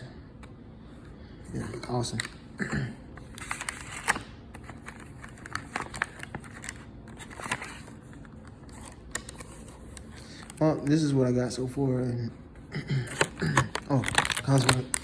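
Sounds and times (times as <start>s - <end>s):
plastic and cardboard crinkling: 3.2s - 10.9s, 13.2s - 15.0s.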